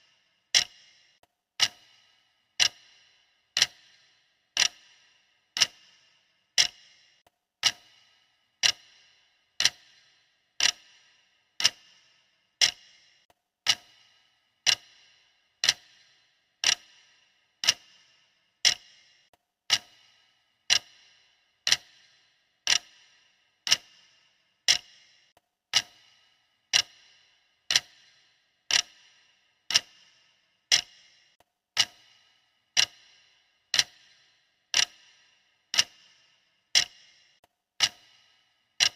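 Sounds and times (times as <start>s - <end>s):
clock ticking: 0.0s - 38.9s.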